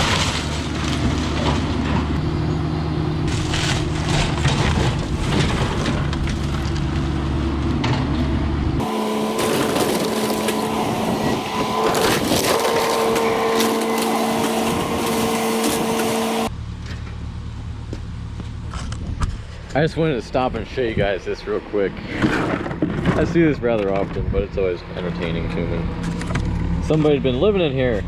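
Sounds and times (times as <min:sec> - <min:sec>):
wood crunching and splintering: 0:00.0 - 0:02.2, 0:03.2 - 0:07.9, 0:08.8 - 0:16.5
excavator engine drone: 0:00.0 - 0:20.6
steady whine: 0:08.8 - 0:16.6.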